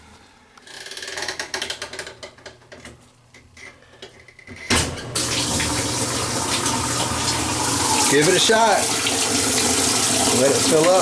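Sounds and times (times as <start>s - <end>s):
washing machine clunk: 4.7s - 8.2s.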